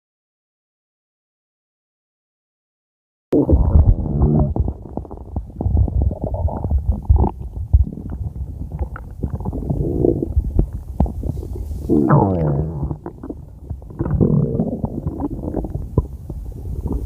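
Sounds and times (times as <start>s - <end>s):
stomach growling: 3.4s - 17.0s.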